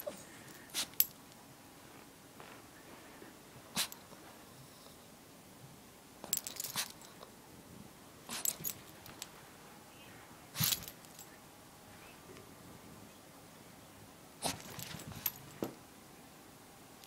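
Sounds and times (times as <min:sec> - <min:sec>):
dog sneezing: 0:00.0 - 0:01.0, 0:03.7 - 0:04.0, 0:08.3 - 0:08.6, 0:14.4 - 0:14.8.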